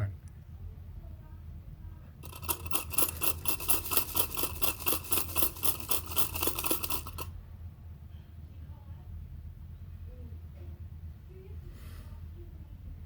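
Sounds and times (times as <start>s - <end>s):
coffee beans rattling in container: 2.2s - 7.3s.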